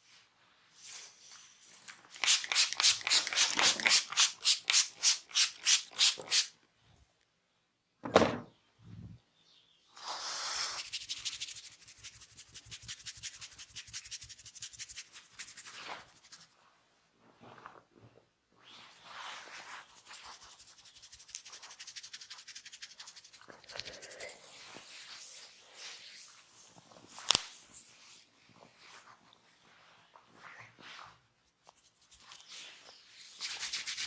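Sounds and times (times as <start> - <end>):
hands rubbing skin: 2.1 - 6.5, 10.6 - 16.6, 19.2 - 26.5, 31.6 - 34.0.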